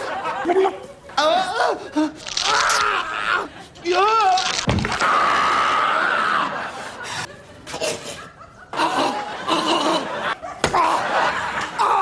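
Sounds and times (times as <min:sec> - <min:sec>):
laughter: 0:00.0 - 0:01.4, 0:06.0 - 0:12.0.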